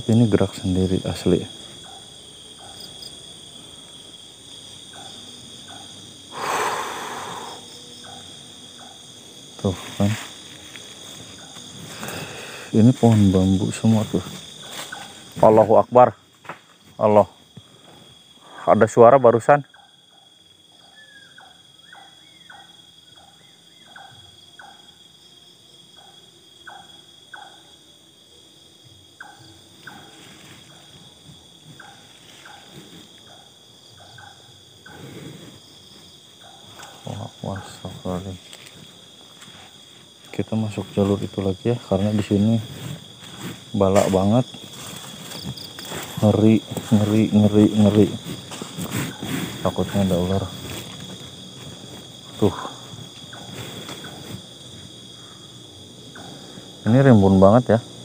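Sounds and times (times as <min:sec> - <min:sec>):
crickets trilling: 0:00.0 - 0:58.0
insects chirping: 0:00.0 - 0:58.0
breathy rush of noise: 0:06.3 - 0:07.8.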